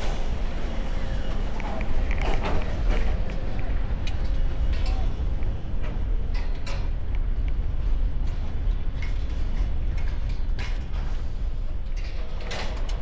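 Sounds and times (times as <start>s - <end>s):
wind buffeting microphone: 0.0s - 13.0s
light clicks and knocks: 11.8s - 13.0s.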